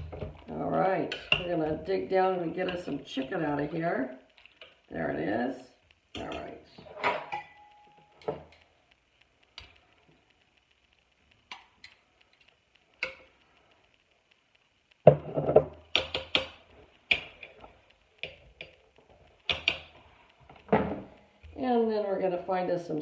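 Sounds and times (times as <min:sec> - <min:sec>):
utensil knocking and scraping dishes: 0:01.1 - 0:01.9.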